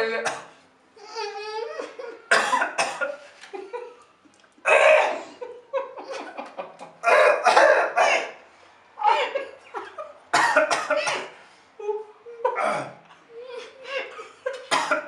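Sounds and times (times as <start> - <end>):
people coughing: 1.9 - 3.2, 4.6 - 5.5, 7.0 - 8.4, 9.8 - 11.4, 12.5 - 15.0
people laughing: 5.2 - 7.0.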